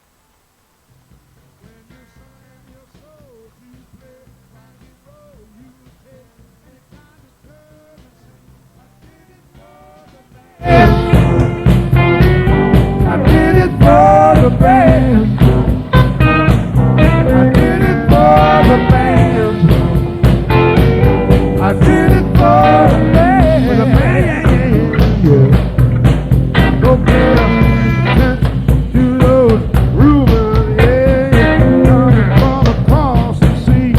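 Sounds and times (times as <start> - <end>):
drums: 0.0 - 33.9
bass guitar: 10.5 - 33.9
electric lead guitar bending notes: 10.6 - 33.4.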